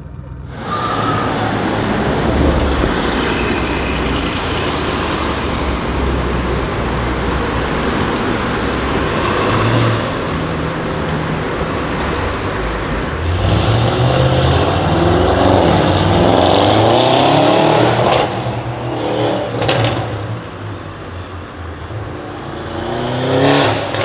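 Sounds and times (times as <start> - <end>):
low engine rumble: 0.0 - 22.6
road traffic: 0.0 - 24.0.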